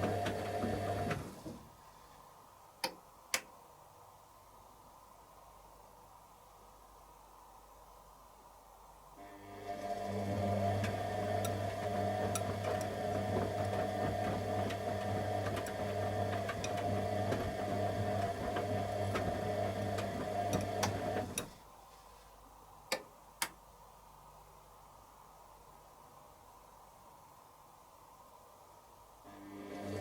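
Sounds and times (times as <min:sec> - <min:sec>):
washing machine motor hum: 0:00.0 - 0:01.4, 0:09.2 - 0:21.6, 0:29.3 - 0:30.0.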